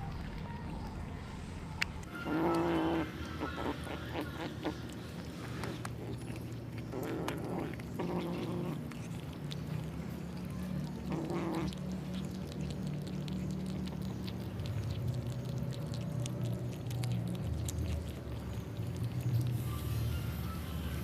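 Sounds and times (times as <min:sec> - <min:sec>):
kittens crunching bone: 0:00.0 - 0:20.4
low growl: 0:02.1 - 0:14.0.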